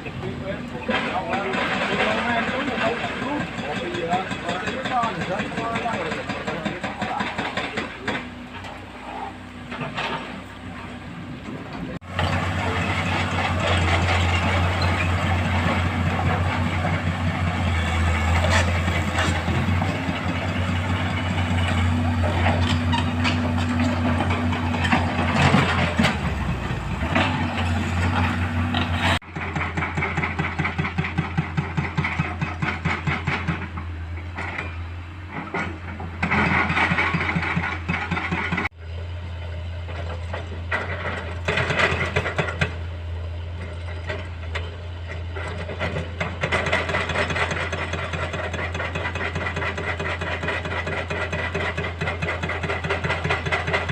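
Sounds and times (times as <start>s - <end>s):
excavator diesel engine running: 0.0s - 53.9s.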